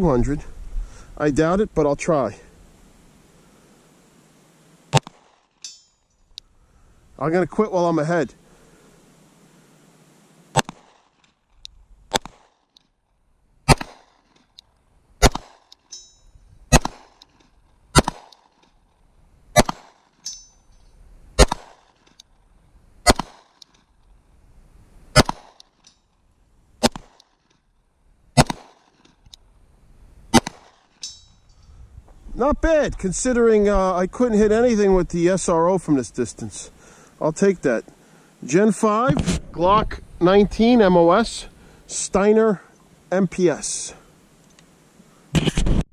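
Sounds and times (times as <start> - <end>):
pistol shots with short echo: 13.7 - 14.1, 15.2 - 15.6, 16.7 - 17.2, 19.6 - 19.9, 21.4 - 21.8, 23.0 - 23.4, 28.4 - 28.8.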